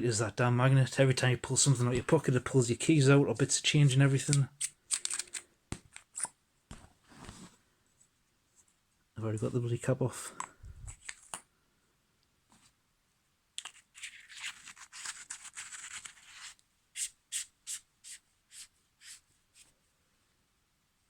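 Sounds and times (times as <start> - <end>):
scratchy rubbing: 13.7 - 19.7.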